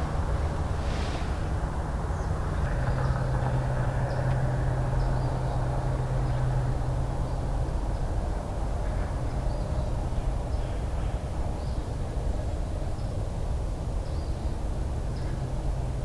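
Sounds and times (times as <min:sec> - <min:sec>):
distant engine rumble: 0:00.0 - 0:09.4.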